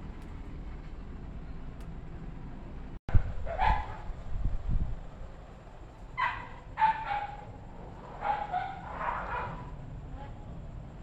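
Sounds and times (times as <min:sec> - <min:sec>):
puppy yapping barks: 0:03.5 - 0:04.1, 0:06.2 - 0:07.5, 0:08.2 - 0:09.7.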